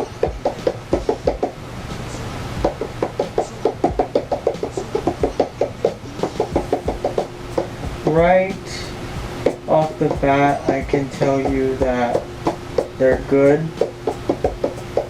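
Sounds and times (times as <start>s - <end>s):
fingers tapping rubber drum pads: 0.0s - 15.0s.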